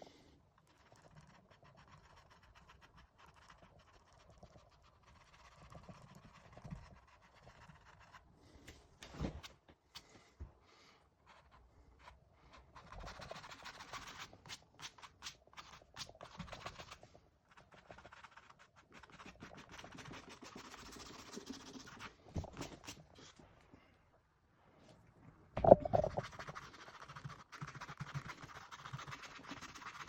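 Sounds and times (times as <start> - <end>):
brush scrubbing paint on canvas: 0.6 - 8.4, 11.2 - 23.3, 26.0 - 30.0.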